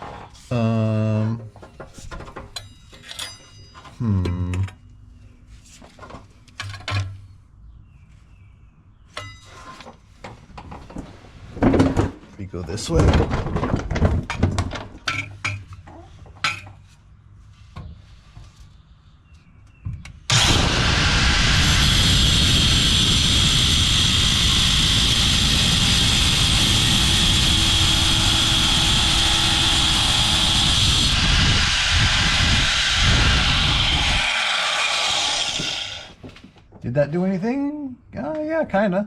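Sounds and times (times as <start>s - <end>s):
knocks and clatters: 9.2s - 16.9s
metal grinder whining: 20.3s - 36.2s.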